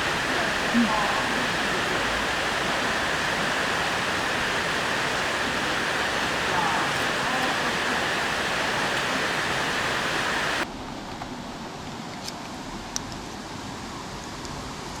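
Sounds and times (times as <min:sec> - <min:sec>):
mountain stream rushing: 0:00.0 - 0:10.7.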